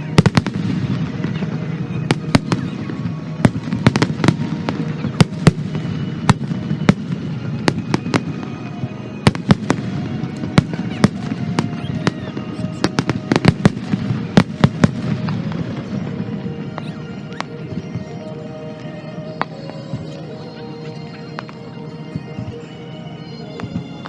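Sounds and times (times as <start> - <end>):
fireworks bangs and cracks: 0.0 - 18.2.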